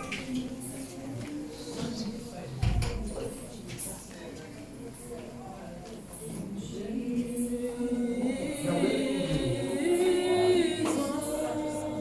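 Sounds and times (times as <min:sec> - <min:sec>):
congregation singing: 0:06.5 - 0:12.0.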